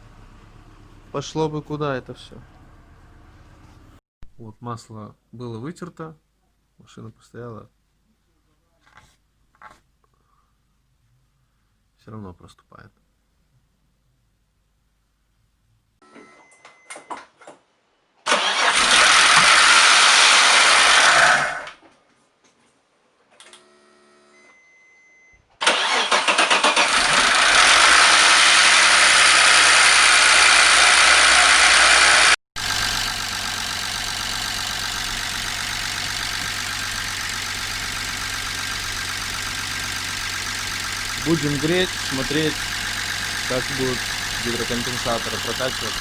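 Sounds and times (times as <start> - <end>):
car engine running: 0.0 - 4.0, 26.8 - 46.0
car engine cranking: 18.3 - 21.5, 25.6 - 46.0
engine knocking: 26.9 - 46.0.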